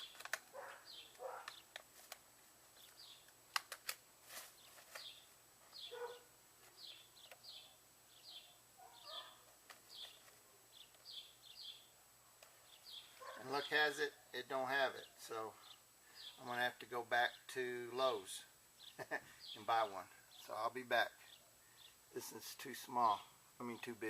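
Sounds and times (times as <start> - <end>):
faint bird chirping: 0.0 - 1.8, 2.6 - 3.4, 4.4 - 24.0
sharp clicks: 0.0 - 2.2, 3.2 - 4.0.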